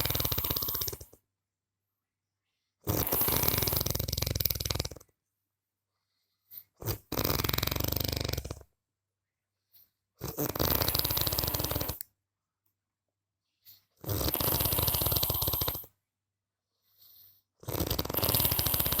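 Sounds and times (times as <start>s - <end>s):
person snoring: 0.0s - 1.2s, 2.8s - 5.1s, 6.8s - 8.7s, 10.2s - 12.0s, 14.0s - 15.9s, 17.6s - 19.0s.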